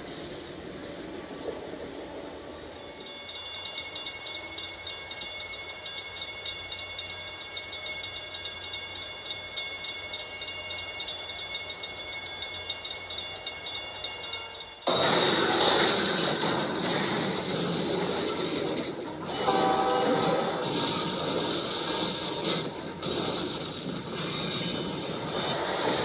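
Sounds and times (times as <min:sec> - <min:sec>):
railroad crossing bell ringing: 0:01.8 - 0:15.2, 0:18.8 - 0:23.0.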